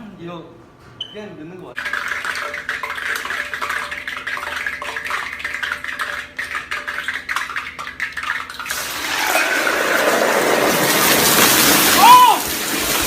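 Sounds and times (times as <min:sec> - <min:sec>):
food crackling and popping in pan: 0:01.8 - 0:13.0
loud steady sizzle: 0:08.7 - 0:13.0.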